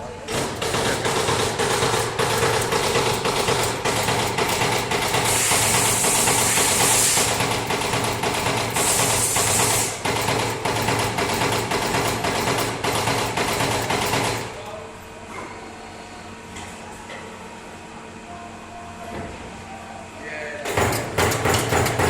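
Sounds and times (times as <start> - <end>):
punch press punching sheet metal: 0.3 - 14.6, 20.7 - 22.0.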